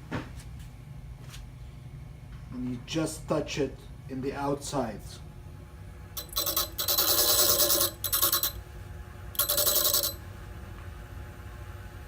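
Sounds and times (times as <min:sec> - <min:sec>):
bench grinder low hum: 0:06.2 - 0:08.6
high ringing grinding: 0:06.2 - 0:08.6, 0:09.4 - 0:10.2.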